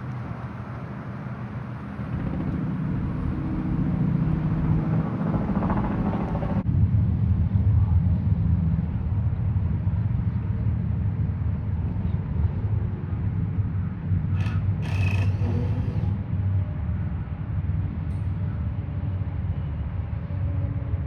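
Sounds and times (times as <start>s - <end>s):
steady low rumble: 0.0s - 21.0s
harsh raspy bird calls: 14.4s - 16.1s.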